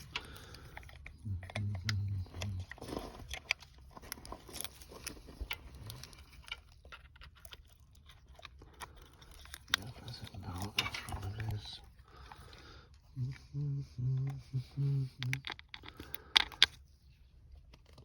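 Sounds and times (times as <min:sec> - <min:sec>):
hands clicking and scraping cover: 0:15.2 - 0:16.8.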